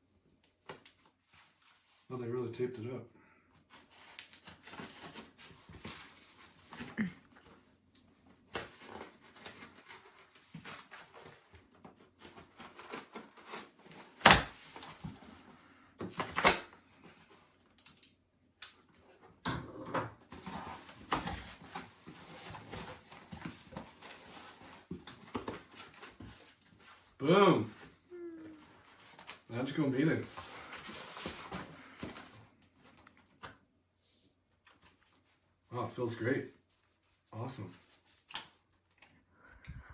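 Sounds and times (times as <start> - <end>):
packing tape ripping off box: 12.2 - 15.2, 16.1 - 16.8.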